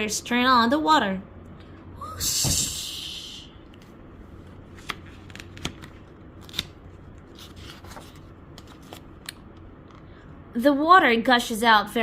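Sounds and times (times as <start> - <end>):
low room hum: 0.0 - 12.0
paper pages rustling: 3.8 - 9.4.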